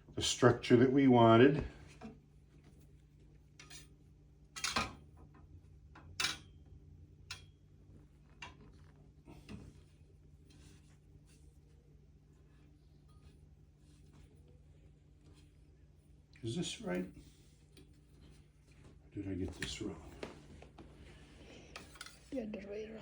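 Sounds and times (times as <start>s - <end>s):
low steady hum: 0.0s - 23.0s.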